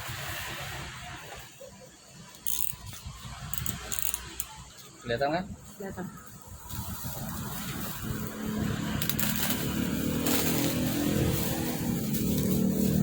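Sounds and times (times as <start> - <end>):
vehicle engine humming: 6.5 - 13.0.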